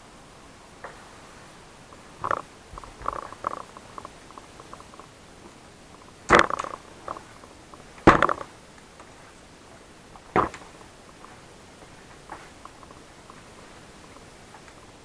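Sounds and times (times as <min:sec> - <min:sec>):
faint small ticks: 0:01.9 - 0:15.0
plastic case clattering knocks: 0:08.0 - 0:08.5, 0:10.4 - 0:10.6.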